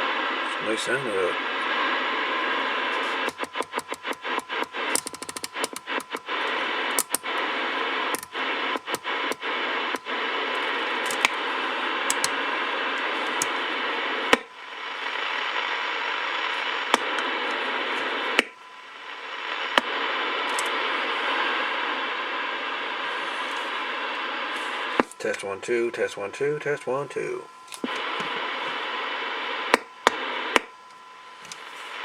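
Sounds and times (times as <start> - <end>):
radio static hiss: 0.0 - 32.0
sharp clicks: 3.2 - 6.3, 6.9 - 7.3, 8.1 - 10.1, 11.0 - 11.4, 12.1 - 12.4.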